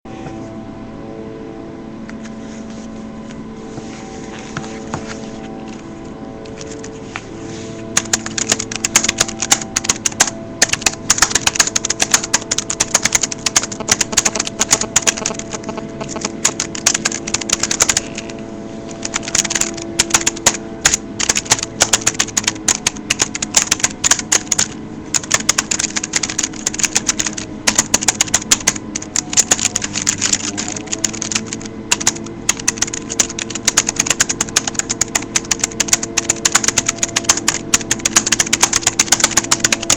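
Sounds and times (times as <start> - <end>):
low hum: 0.1 - 39.9
fast keyboard typing: 6.4 - 7.0, 8.0 - 18.3, 19.0 - 39.9.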